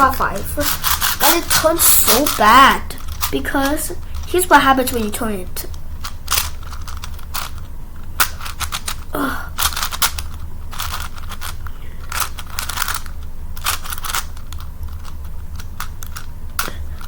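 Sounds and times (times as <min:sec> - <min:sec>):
steady low hum: 0:00.0 - 0:17.0
plastic puzzle cube clicks: 0:09.6 - 0:17.0.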